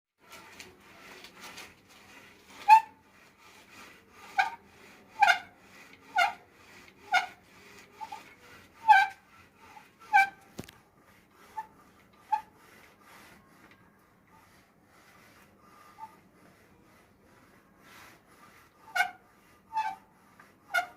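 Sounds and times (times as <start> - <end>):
bicycle handlebar squeaking: 1.7 - 3.0, 3.7 - 10.7, 11.5 - 14.4, 15.7 - 16.2, 18.8 - 20.1, 20.7 - 20.9.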